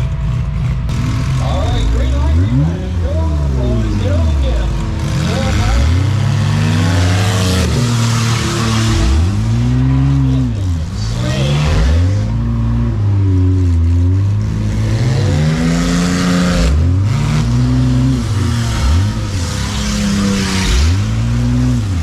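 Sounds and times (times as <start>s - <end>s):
engine revving: 0.0s - 22.0s.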